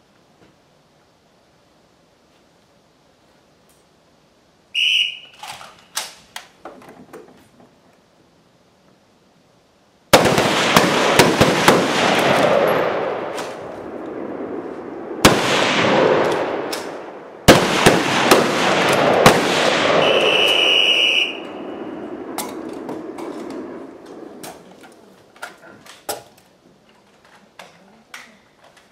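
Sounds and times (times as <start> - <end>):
whistle blast: 4.7 - 5.4, 20.0 - 21.9
rifle shots with echo: 10.1 - 14.6, 15.2 - 24.4.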